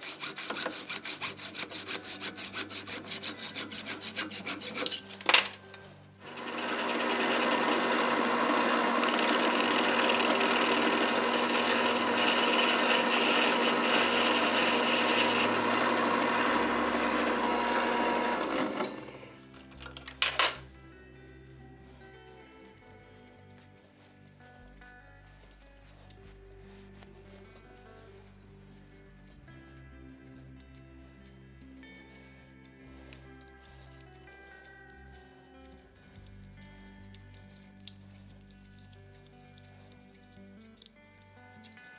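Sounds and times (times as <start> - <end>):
metal rasping strokes: 0.0 - 19.4
power tool whining: 6.2 - 19.4.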